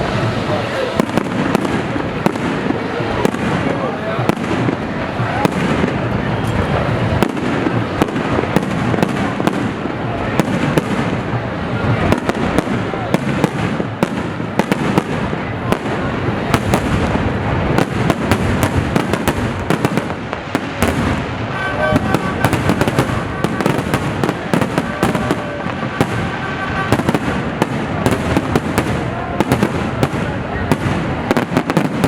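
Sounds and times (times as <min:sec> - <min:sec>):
rumbling haze: 0:00.0 - 0:13.0
fireworks bangs and crackles: 0:00.0 - 0:32.0.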